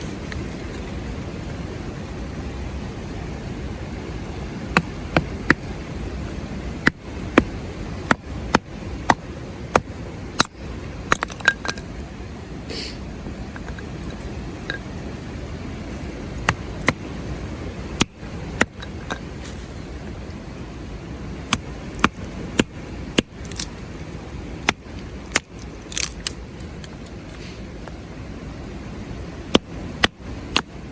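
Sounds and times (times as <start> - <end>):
sharp knocks and clicks: 6.8 - 11.9.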